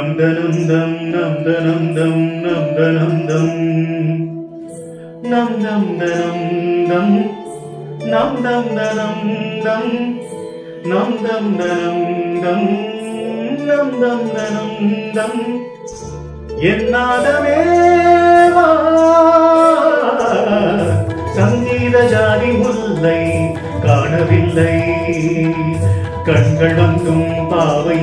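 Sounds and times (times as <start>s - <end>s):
man singing wordless gliding melody: 0.0s - 28.0s
deep bass note: 16.0s - 19.6s.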